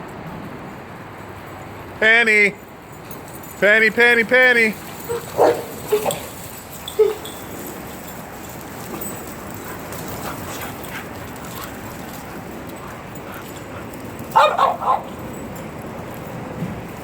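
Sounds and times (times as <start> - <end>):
background noise: 0.0 - 17.0
dog barking: 5.1 - 6.3, 14.3 - 15.2.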